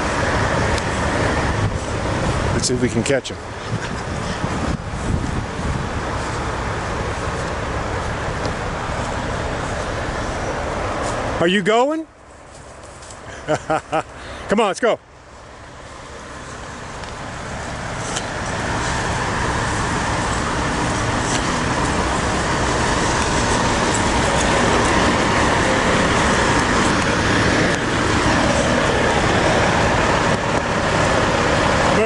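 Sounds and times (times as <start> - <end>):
road traffic noise: 0.0 - 32.0.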